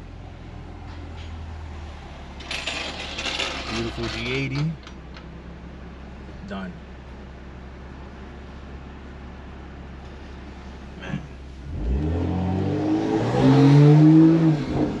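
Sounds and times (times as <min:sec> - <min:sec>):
car engine idling and revving: 0:00.0 - 0:15.0.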